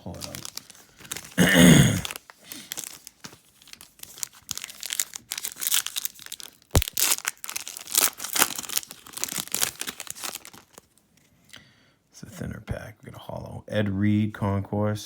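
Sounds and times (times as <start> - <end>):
card pack wrapper crinkling and tearing: 0.0 - 11.0.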